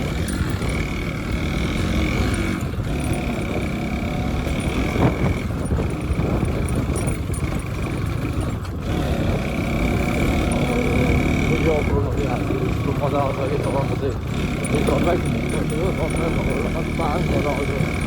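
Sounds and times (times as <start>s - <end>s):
motorcycle engine and road noise: 0.0s - 18.0s.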